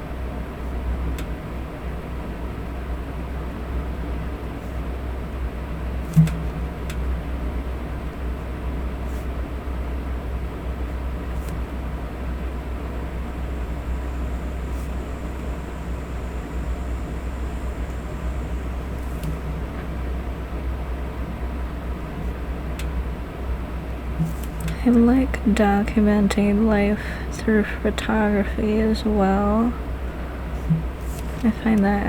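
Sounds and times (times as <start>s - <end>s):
electric fan humming: 0.0s - 32.0s
short thump: 30.6s - 30.9s.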